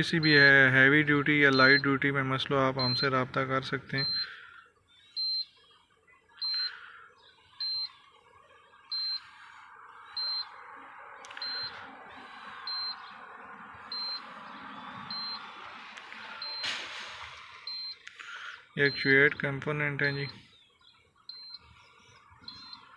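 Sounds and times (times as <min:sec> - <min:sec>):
short high electronic beeps: 0:04.0 - 0:04.3, 0:05.2 - 0:05.5, 0:06.4 - 0:06.7, 0:07.6 - 0:07.9, 0:08.9 - 0:09.2, 0:10.2 - 0:10.5, 0:11.3 - 0:11.8, 0:12.7 - 0:13.0, 0:13.9 - 0:14.3, 0:15.1 - 0:15.4, 0:16.4 - 0:16.8, 0:17.7 - 0:18.0, 0:21.3 - 0:21.7, 0:22.4 - 0:22.8.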